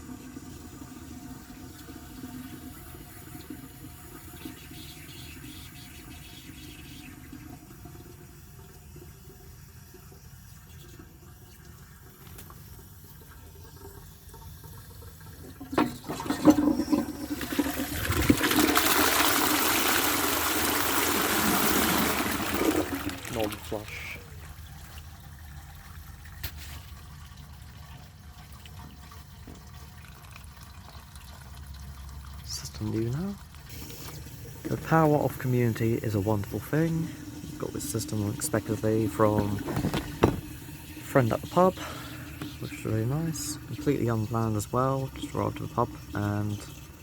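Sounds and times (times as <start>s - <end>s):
toilet cistern flushing: 0.0s - 47.0s
water running quietly: 0.0s - 47.0s
sharp knocks: 39.6s - 40.5s.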